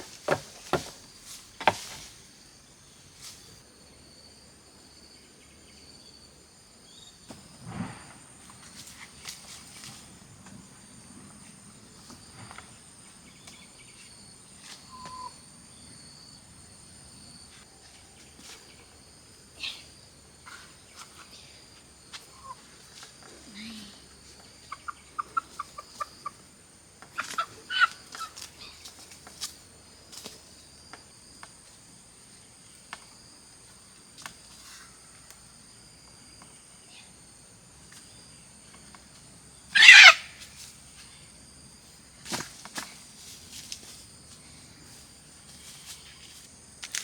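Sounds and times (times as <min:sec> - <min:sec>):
soft knocks and rustles: 0:00.0 - 0:02.2
insects chirring: 0:00.0 - 0:47.0.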